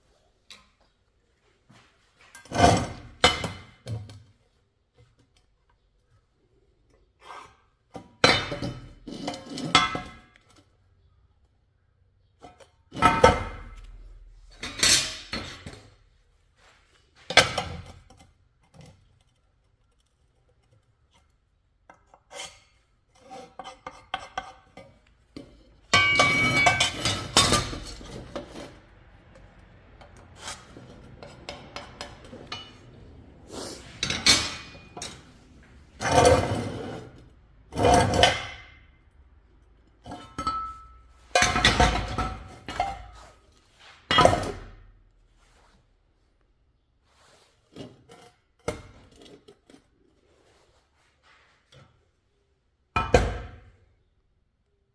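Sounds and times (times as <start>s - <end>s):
steel pipes clanking: 25.8s - 28.9s, 30.1s - 33.2s, 33.8s - 36.8s.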